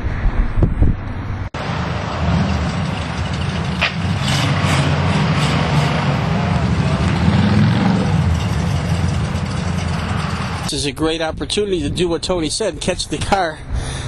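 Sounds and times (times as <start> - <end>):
vehicle engine running: 1.6 - 10.7.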